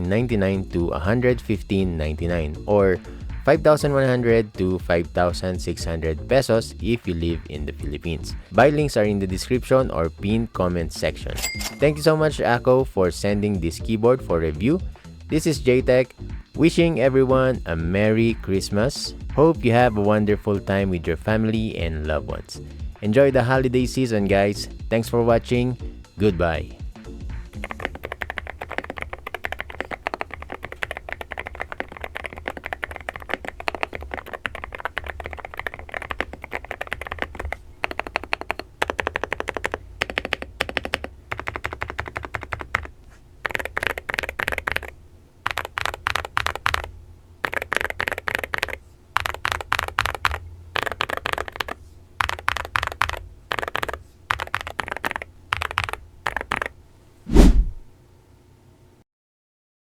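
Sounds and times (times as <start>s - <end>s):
mechanical keyboard typing: 27.6s - 56.7s.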